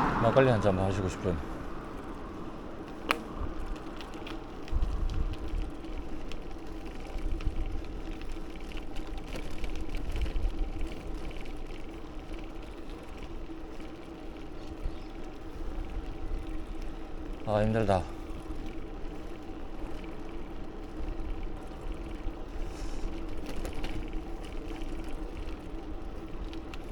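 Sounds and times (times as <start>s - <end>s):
wind buffeting microphone: 0.0s - 11.6s, 14.2s - 23.4s.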